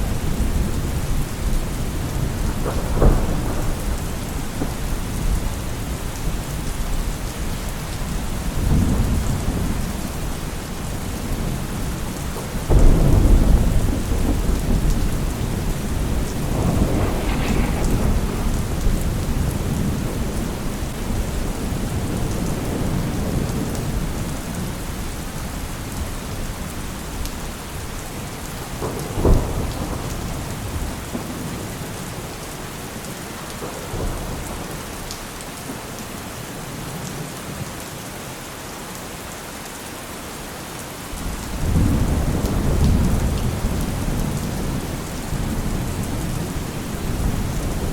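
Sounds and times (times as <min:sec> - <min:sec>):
thunder rumbling: 0:00.0 - 0:07.0, 0:08.0 - 0:24.7, 0:41.2 - 0:47.9
heavy rain falling: 0:00.0 - 0:47.9
sharp thunder crack: 0:12.7 - 0:22.1.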